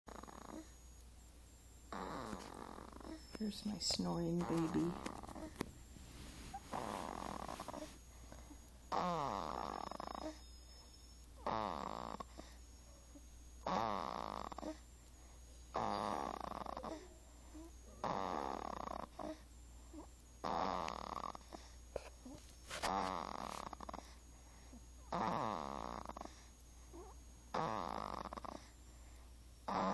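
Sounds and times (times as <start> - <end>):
person snoring: 0.1 - 0.7, 1.9 - 3.2, 6.5 - 10.4, 11.4 - 12.6, 13.7 - 14.8, 15.8 - 19.4, 20.0 - 21.6, 22.7 - 24.2, 25.1 - 26.4, 27.0 - 28.7, 29.7 - 29.9.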